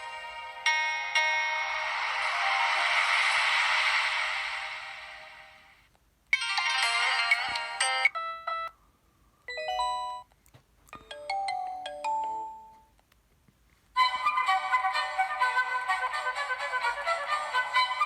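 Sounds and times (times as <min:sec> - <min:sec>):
phone ringtone melodies: 0:00.0 - 0:03.3, 0:06.4 - 0:08.7, 0:09.5 - 0:10.3, 0:11.0 - 0:12.9.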